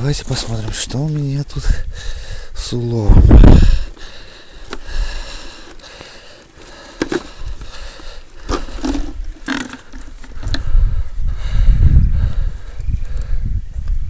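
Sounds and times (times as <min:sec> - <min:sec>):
gear scraping and rustling: 0:00.0 - 0:01.5, 0:02.7 - 0:10.8.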